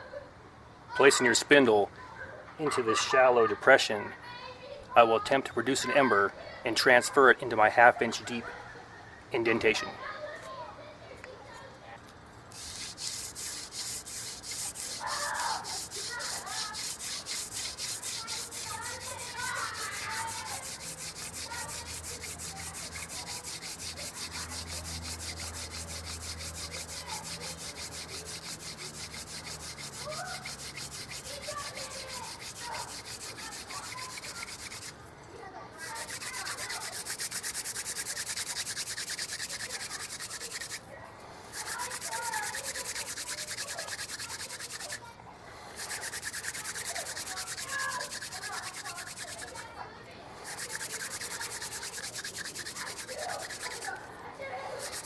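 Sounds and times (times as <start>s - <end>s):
wood grinding on wood: 12.5s - 35.0s, 35.8s - 40.8s, 41.4s - 45.0s, 45.6s - 49.7s, 50.4s - 55.0s.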